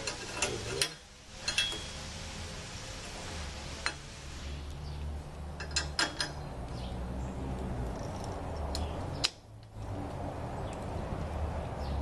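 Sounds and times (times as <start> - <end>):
metal parts clinking: 0.1 - 1.9.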